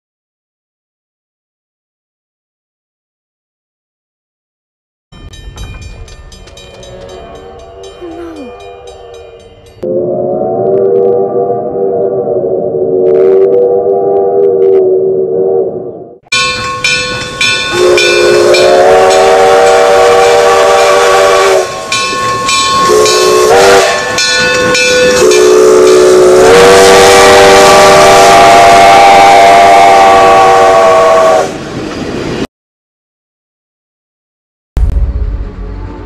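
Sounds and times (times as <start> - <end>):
steam whistle: 9.8 - 15.7, 17.7 - 22.1, 22.8 - 24.2, 25.0 - 31.6.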